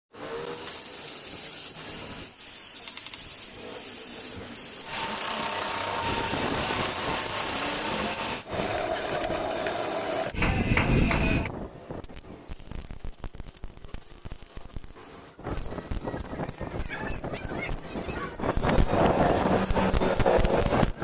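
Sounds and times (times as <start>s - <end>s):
machine scraping: 4.9s - 11.5s
metalworking machine whirring: 4.9s - 11.5s.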